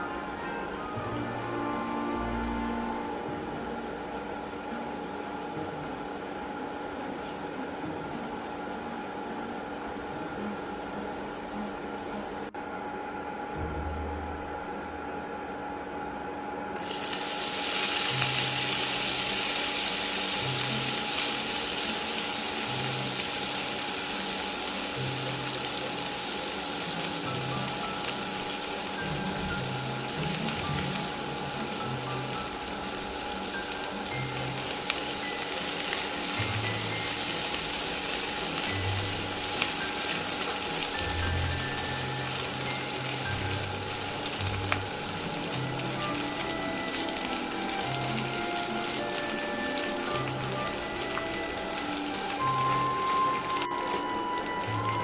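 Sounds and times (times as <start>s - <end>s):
food sizzling in hot oil: 16.8s - 55.0s.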